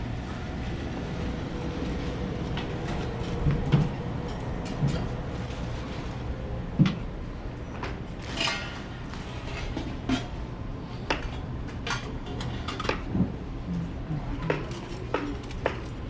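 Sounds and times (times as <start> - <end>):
steady room hum: 0.0 - 16.0
dishes and utensils clinking: 8.2 - 13.1.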